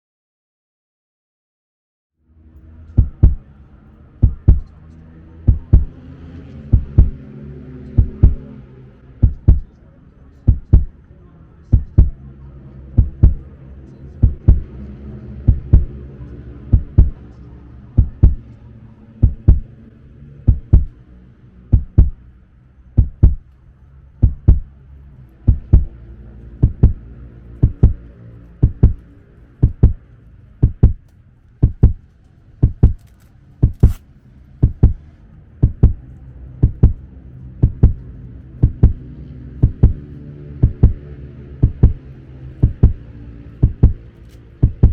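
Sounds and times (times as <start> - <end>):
low steady hum: 2.2 - 44.9
heartbeat thumps: 2.9 - 3.5, 4.2 - 4.7, 5.5 - 6.0, 6.7 - 7.2, 7.9 - 8.5, 9.2 - 9.7, 10.5 - 11.0, 11.7 - 12.2, 12.9 - 13.5, 14.2 - 14.8, 15.4 - 16.0, 16.7 - 17.2, 18.0 - 18.5, 19.2 - 19.8, 20.4 - 21.0, 21.7 - 22.2, 23.0 - 23.4, 24.2 - 24.8, 25.5 - 27.0, 27.6 - 28.0, 28.6 - 30.0, 30.6 - 31.0, 31.6 - 32.0, 32.6 - 33.0, 33.6 - 34.0, 34.6 - 35.0, 35.6 - 36.0, 36.6 - 38.0, 38.6 - 39.0, 39.6 - 42.0, 42.6 - 43.0, 43.6 - 44.0, 44.6 - 44.9.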